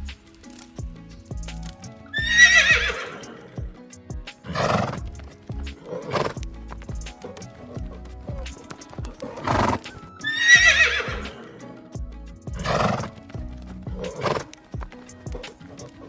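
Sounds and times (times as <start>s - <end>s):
background music with steady beat: 0.0s - 16.0s
horse whinnying: 2.1s - 3.7s, 4.5s - 5.1s, 5.8s - 6.4s, 9.2s - 11.7s, 12.6s - 13.1s.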